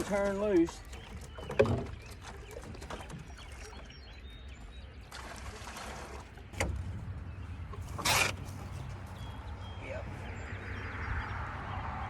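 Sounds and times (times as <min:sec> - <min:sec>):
water sloshing: 0:00.0 - 0:09.6.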